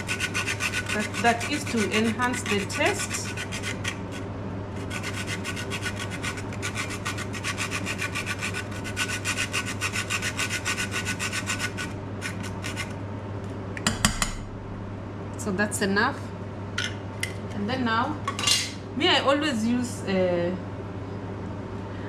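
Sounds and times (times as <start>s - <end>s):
nutmeg rasping on a grater: 0.0s - 4.2s, 4.8s - 12.9s.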